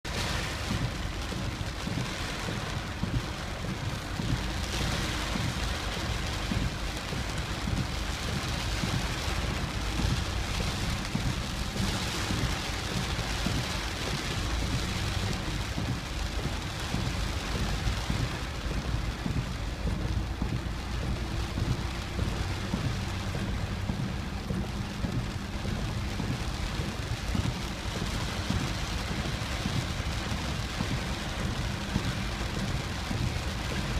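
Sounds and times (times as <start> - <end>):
constant low rumble: 0.0 - 33.9
heavy rain and river water rushing: 0.0 - 33.9.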